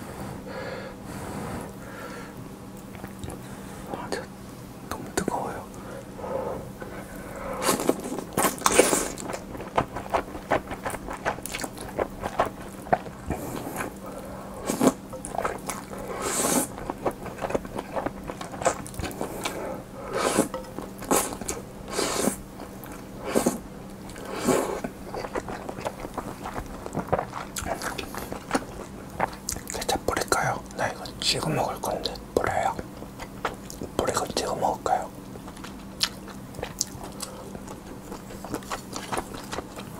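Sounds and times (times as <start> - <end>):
person biting and chewing food: 7.6 - 29.9, 35.4 - 39.9.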